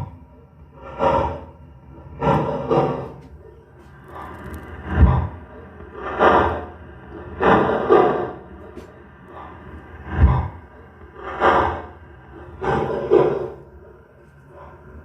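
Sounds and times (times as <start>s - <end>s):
steady hum: 0.0s - 15.0s.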